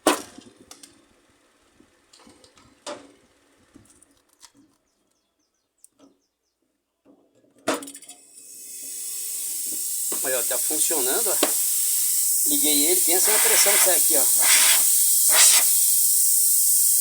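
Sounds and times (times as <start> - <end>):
hands and tools clicking on tubing: 13.2 - 17.0.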